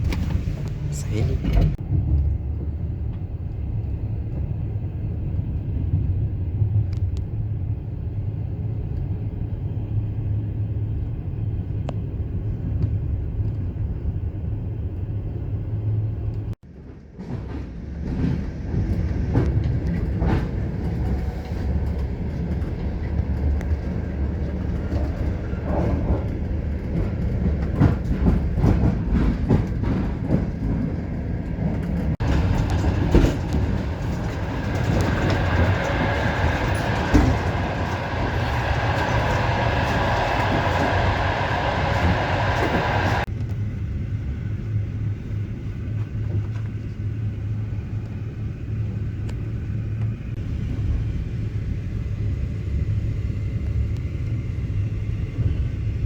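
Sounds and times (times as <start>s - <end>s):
train carriage rumbling: 0.0s - 56.0s
wheels knocking on rails: 17.3s - 43.3s.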